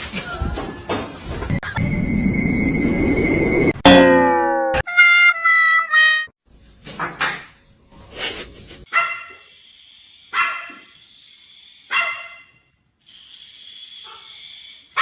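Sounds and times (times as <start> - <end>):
dog barking: 8.9 - 9.4, 10.4 - 10.9, 11.9 - 12.6.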